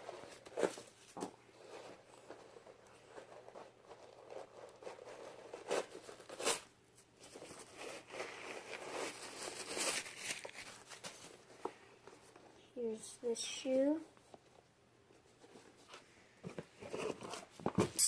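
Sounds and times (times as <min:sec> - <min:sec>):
packaging rustling and crinkling: 0:00.1 - 0:12.4.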